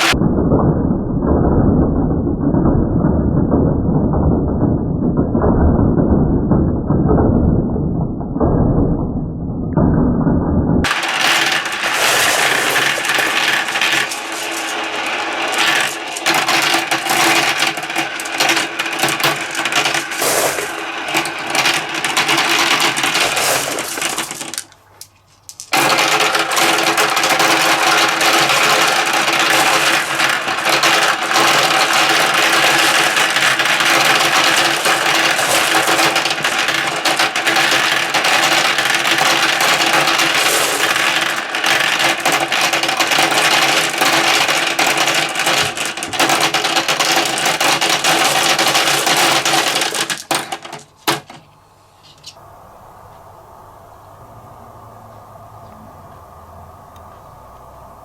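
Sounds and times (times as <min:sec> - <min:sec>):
marbles rattling down plastic track: 0:10.8 - 0:51.4.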